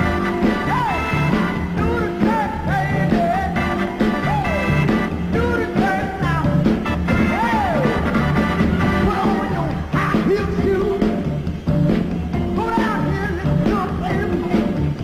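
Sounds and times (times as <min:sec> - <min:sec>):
soul music with drums and bass: 0:00.0 - 0:15.0.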